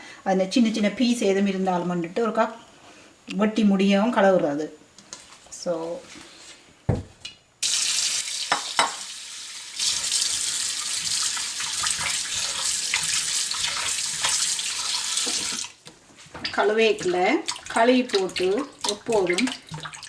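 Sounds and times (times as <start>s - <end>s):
tap water running into sink: 7.6s - 15.8s.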